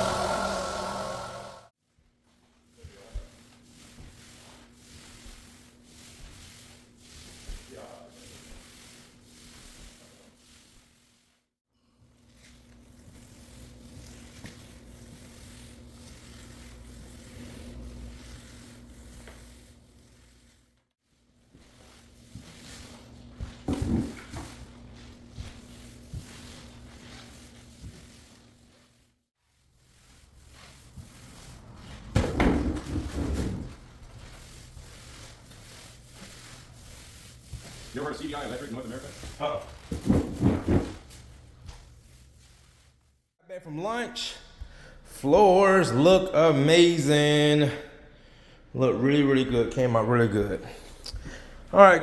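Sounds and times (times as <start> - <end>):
floor buffer motor hum: 0.0 - 1.7, 12.4 - 20.3.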